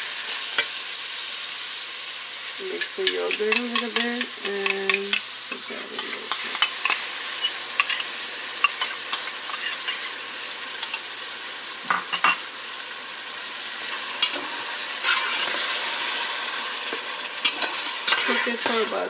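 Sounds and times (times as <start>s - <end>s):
food sizzling in oil: 0.0s - 19.0s
spoon stirring and scraping pot: 2.7s - 10.2s, 10.8s - 11.0s, 14.0s - 16.1s, 16.8s - 19.0s.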